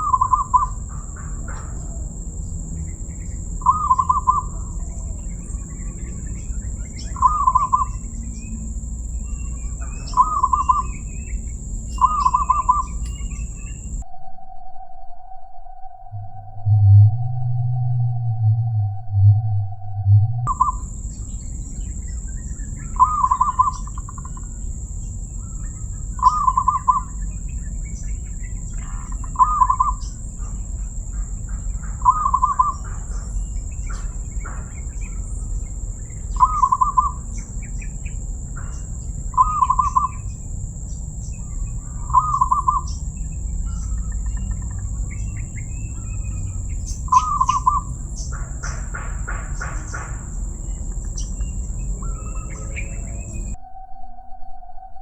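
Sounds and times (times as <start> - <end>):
dove cooing: 0.0 - 2.5, 3.6 - 8.5, 9.1 - 14.0, 22.8 - 24.6, 25.5 - 27.4, 28.6 - 35.6, 36.3 - 37.4, 38.6 - 40.3, 41.5 - 53.6
high-pitched whine: 0.0 - 55.0.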